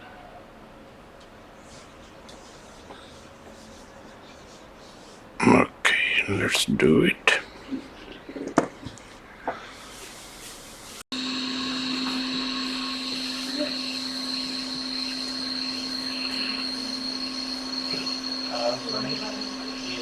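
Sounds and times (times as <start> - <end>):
hot-air station fan blowing: 10.7 - 20.0
high whine: 11.1 - 20.0.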